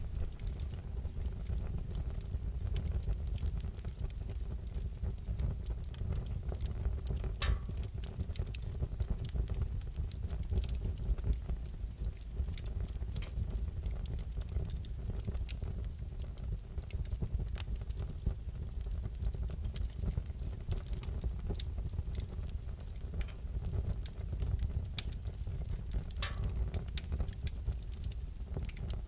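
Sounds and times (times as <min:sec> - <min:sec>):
wood fire crackling: 0:00.0 - 0:29.0.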